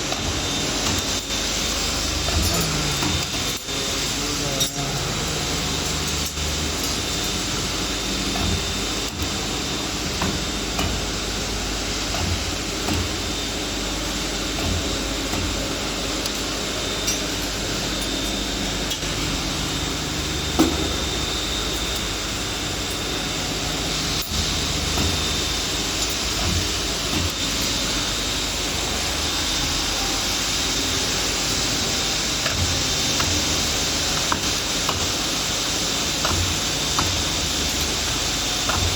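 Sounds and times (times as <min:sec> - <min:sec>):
machine hiss and hum: 0:00.0 - 0:38.9.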